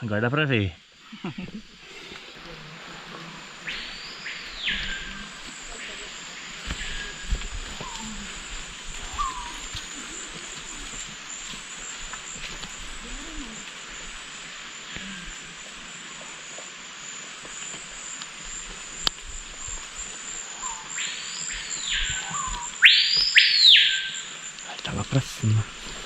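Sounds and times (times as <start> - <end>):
high insect drone: 0.0 - 26.0
animal calls sweeping up: 1.1 - 11.4, 20.5 - 24.3.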